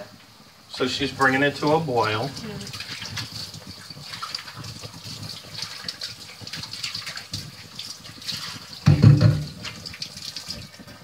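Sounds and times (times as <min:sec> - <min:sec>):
water running and splashing: 0:00.7 - 0:11.0
loud low thump: 0:08.9 - 0:09.5.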